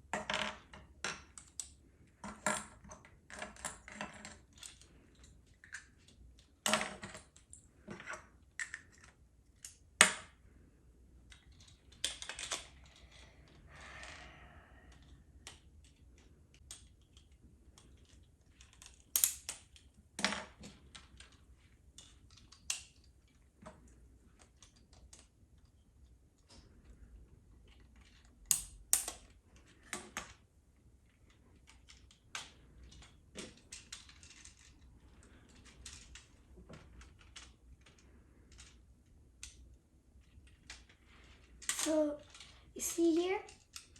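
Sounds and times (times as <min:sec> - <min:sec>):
plastic toy parts clicking: 0:11.2 - 0:13.2, 0:14.9 - 0:23.5, 0:24.3 - 0:26.1, 0:27.6 - 0:30.4, 0:31.0 - 0:43.9.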